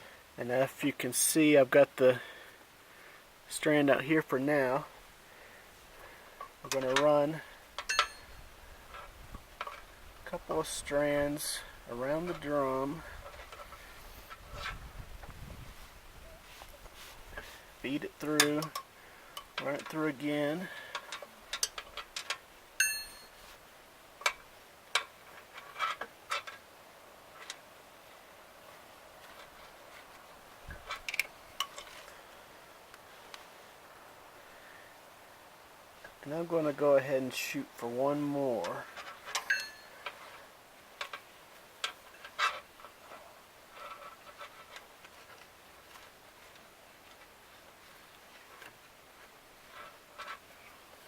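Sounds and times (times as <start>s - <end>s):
short metallic ring: 7.8s - 8.4s, 22.8s - 23.5s, 39.4s - 40.0s
rope clicking and scraping: 7.8s - 33.7s, 38.2s - 51.0s
rope clicking on winch drum: 18.2s - 23.4s, 24.2s - 26.7s, 30.8s - 32.2s.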